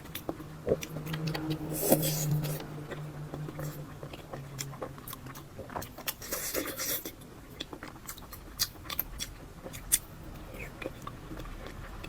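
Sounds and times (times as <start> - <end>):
chewing with wet mouth clicks: 0.0 - 12.0.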